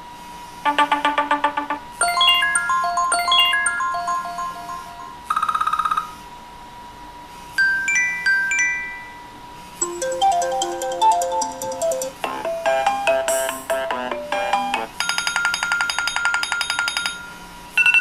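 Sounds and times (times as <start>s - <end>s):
rising chime notes: 0.7s - 5.3s, 9.8s - 12.1s
ringtone melody with chords: 0.7s - 6.1s, 9.8s - 15.4s
fast-pulsing phone tone: 0.7s - 6.2s.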